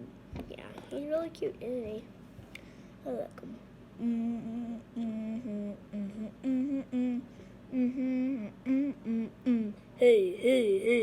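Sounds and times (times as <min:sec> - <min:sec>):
child humming: 0:04.0 - 0:11.0.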